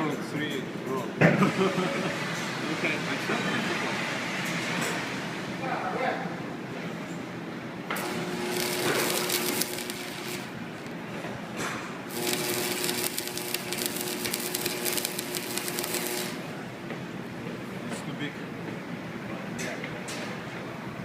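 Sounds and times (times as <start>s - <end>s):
welder humming: 7.9s - 11.0s, 12.1s - 16.7s
welding arc crackling: 8.0s - 10.6s, 12.1s - 16.6s.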